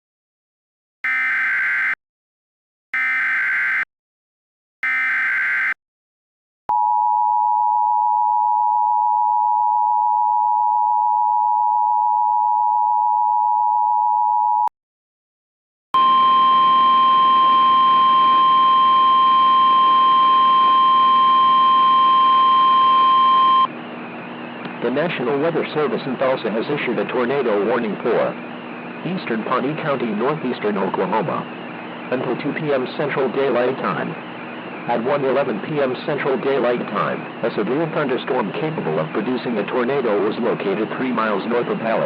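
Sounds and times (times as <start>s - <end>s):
two-tone attention signal: 1.1s - 2.0s, 3.0s - 3.9s, 4.8s - 5.8s
radio static: 23.5s - 42.0s.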